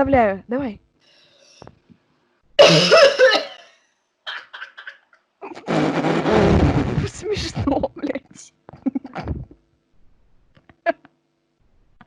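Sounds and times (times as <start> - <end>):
person hawking throat: 2.6 - 3.6, 4.3 - 7.2, 8.9 - 9.6
person coughing: 2.6 - 3.7, 4.3 - 5.6.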